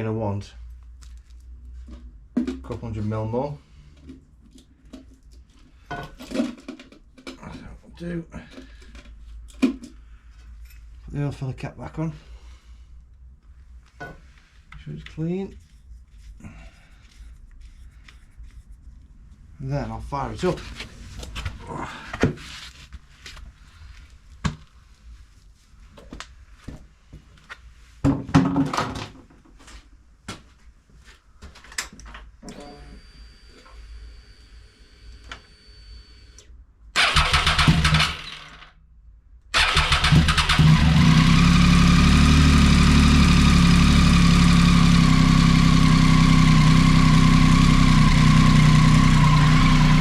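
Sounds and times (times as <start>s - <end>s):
motorcycle engine starting and idling: 37.0s - 38.7s, 39.6s - 50.0s.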